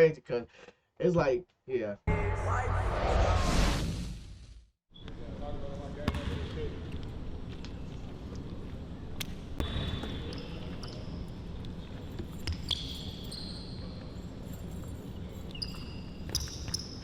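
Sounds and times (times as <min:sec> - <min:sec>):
basketball bouncing on gym floor: 0:06.0 - 0:06.5
sneaker squeaks: 0:09.6 - 0:17.0.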